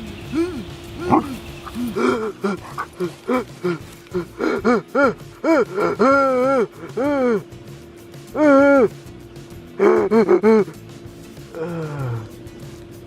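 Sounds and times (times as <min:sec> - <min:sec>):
dog whining and yipping: 0:01.0 - 0:03.6.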